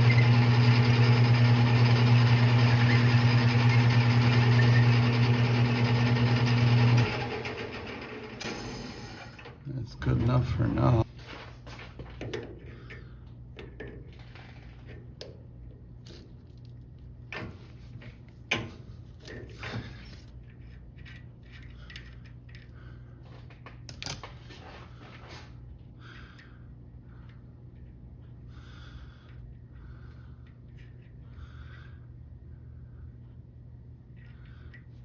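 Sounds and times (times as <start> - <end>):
steady low hum: 24.5 - 35.0.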